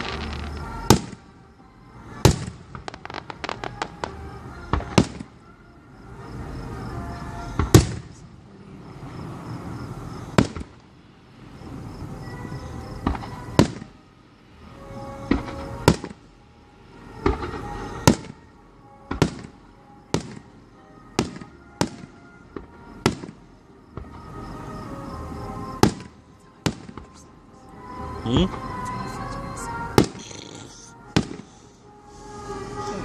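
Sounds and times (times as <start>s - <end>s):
fireworks bangs: 0.0s - 1.3s, 2.1s - 5.4s, 7.6s - 8.2s, 10.2s - 10.8s, 12.8s - 14.0s, 15.2s - 16.2s, 17.2s - 18.4s, 19.1s - 20.5s, 21.1s - 24.3s, 25.8s - 27.2s, 29.9s - 30.4s, 31.1s - 31.6s.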